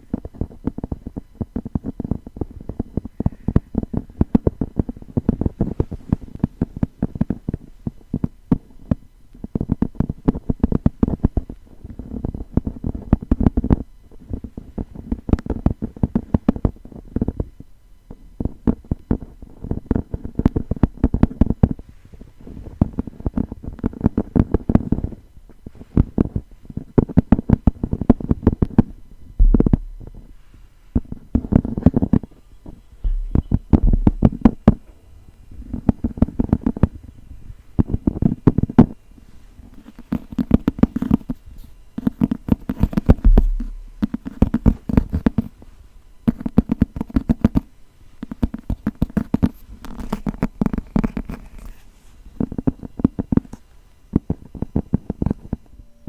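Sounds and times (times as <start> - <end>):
fast dull tapping on a book: 0.1 - 17.5, 18.4 - 34.9, 35.6 - 37.0, 37.8 - 55.6
low thump: 29.4 - 30.6, 33.0 - 34.8, 43.2 - 44.9.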